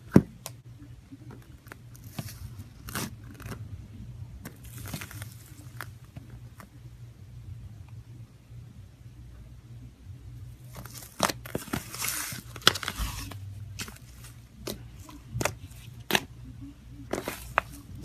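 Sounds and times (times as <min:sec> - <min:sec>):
slime crackling: 0:01.4 - 0:03.7, 0:04.4 - 0:06.7, 0:10.6 - 0:16.4, 0:17.0 - 0:18.0.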